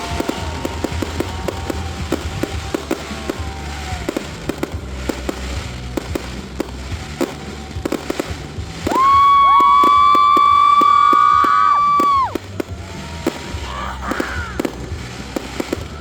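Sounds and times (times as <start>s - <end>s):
low rumble: 0.0s - 10.2s
fireworks popping and cracking: 0.0s - 16.0s
whistling fireworks: 0.0s - 16.0s.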